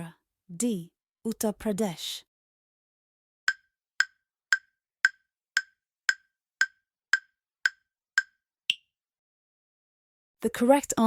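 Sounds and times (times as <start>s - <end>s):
countdown timer ticking: 3.5s - 8.8s.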